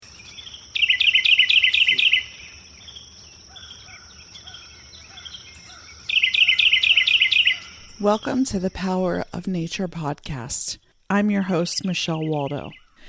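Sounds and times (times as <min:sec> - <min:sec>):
scattered bird calls: 0:00.0 - 0:08.8
songbird singing: 0:00.0 - 0:13.0.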